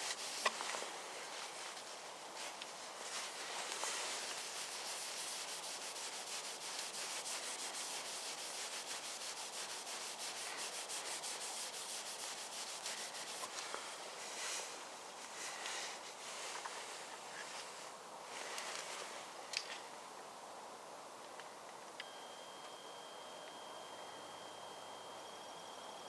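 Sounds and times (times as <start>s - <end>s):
hand rubbing on car paintwork: 0.0s - 17.7s.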